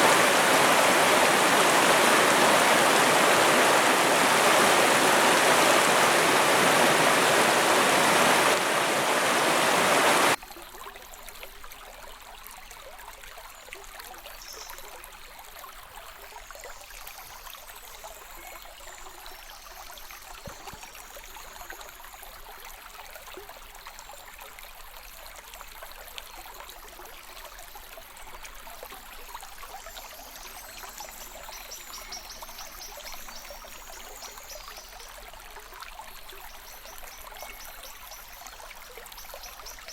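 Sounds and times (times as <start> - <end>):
river rushing: 0.0 - 10.4.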